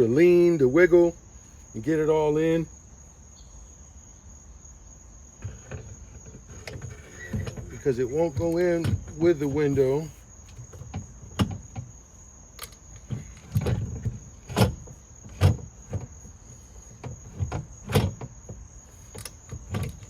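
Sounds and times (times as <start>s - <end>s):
knocks and clunks inside car door: 5.4s - 12.0s, 13.0s - 20.0s.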